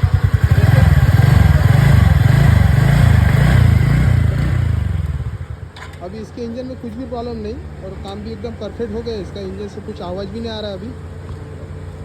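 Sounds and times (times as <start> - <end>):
scooter engine revving: 0.0 - 5.7.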